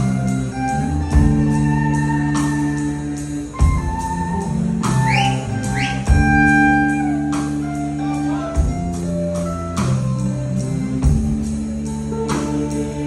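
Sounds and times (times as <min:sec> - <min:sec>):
drums: 0:00.0 - 0:13.0
guitar and keyboard notes: 0:00.0 - 0:13.0.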